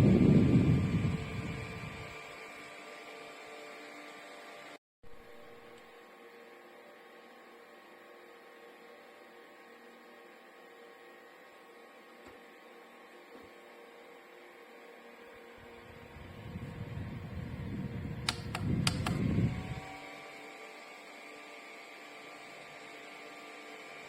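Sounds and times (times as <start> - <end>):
desk fan humming: 0.0 - 24.0.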